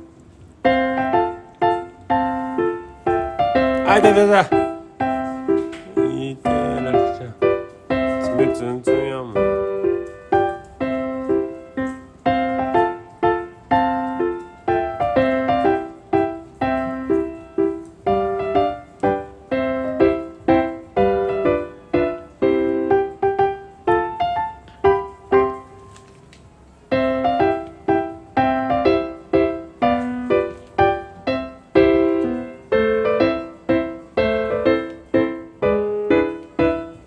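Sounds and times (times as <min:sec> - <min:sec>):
light piano tune: 0:00.0 - 0:37.0.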